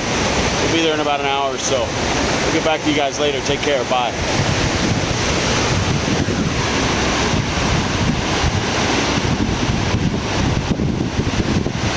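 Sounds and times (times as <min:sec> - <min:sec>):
steady rushing noise: 0:00.0 - 0:11.9
wind buffeting microphone: 0:00.0 - 0:11.9.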